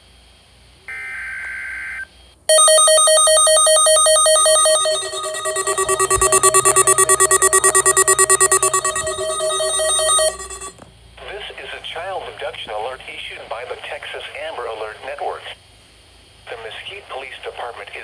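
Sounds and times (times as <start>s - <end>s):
steady alert tone: 2.5s - 10.7s
warbling electronic alert signal: 2.5s - 10.7s.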